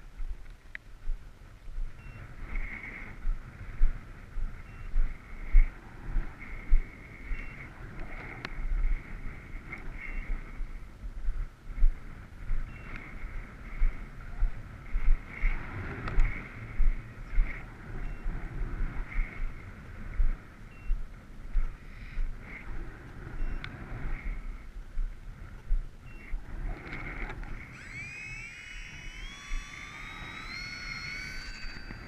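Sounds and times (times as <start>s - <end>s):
wind buffeting microphone: 0.0s - 32.0s
model plane motor drone: 2.2s - 10.9s, 12.2s - 20.1s, 26.4s - 32.0s.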